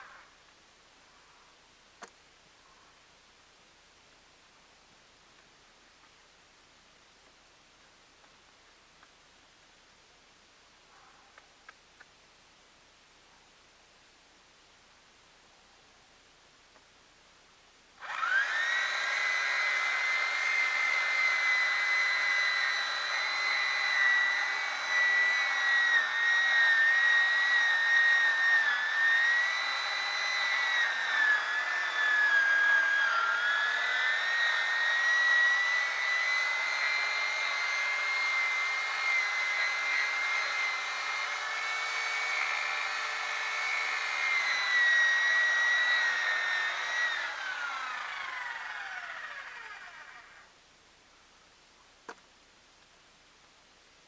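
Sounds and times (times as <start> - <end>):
chainsaw cutting a log: 18.0 - 50.5.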